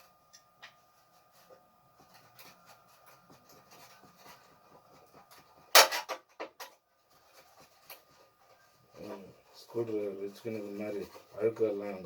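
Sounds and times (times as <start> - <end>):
faint rubbing: 7.1 - 12.0.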